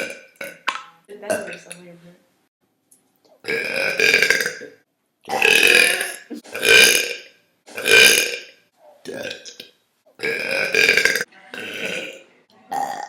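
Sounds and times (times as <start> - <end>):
girl burping loudly: 1.3 - 1.6, 3.4 - 4.7, 5.3 - 9.6, 10.2 - 13.0.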